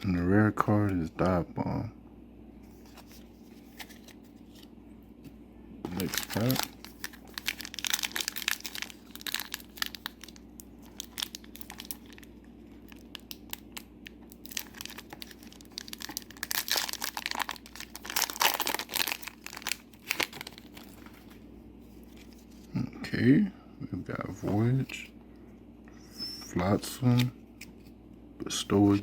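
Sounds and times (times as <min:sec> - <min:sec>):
wrapper tearing and crinkling: 0:05.9 - 0:21.4.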